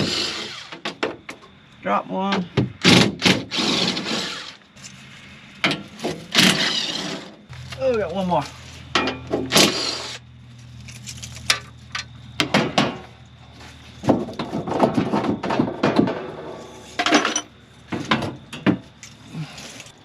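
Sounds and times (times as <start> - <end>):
hard objects clattering and knocking: 14.0 - 18.8.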